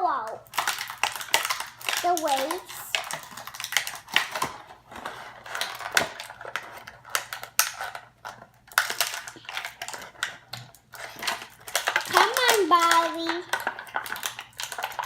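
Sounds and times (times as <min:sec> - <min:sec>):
plastic packaging crinkling: 0:00.4 - 0:15.0.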